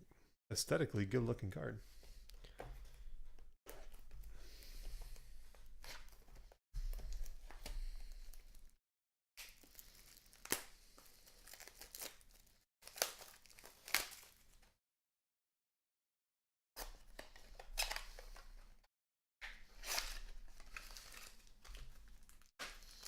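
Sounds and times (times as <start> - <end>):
crinkly wrapper snaps: 9.4 - 10.8
wrapper rustling and tearing: 9.4 - 14.6, 19.7 - 23.0.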